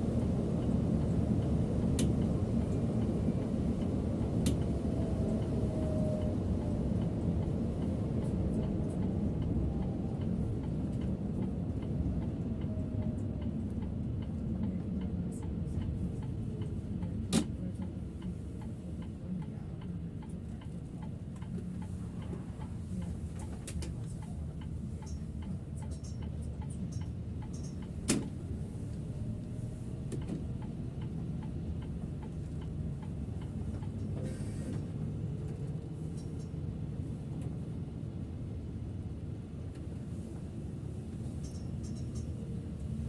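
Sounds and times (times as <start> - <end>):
bus engine and road rumble: 0.0 - 43.0
turn signal ticking: 8.9 - 15.1, 29.0 - 34.1.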